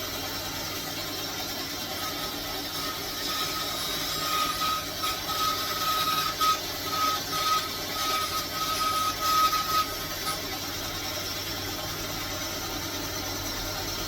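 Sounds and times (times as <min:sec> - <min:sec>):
small motor whining: 0:01.5 - 0:11.5.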